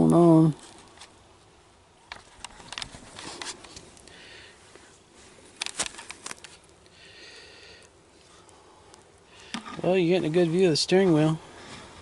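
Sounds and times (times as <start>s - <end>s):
camera handling clicks and rustling: 2.1s - 3.9s, 5.6s - 6.7s.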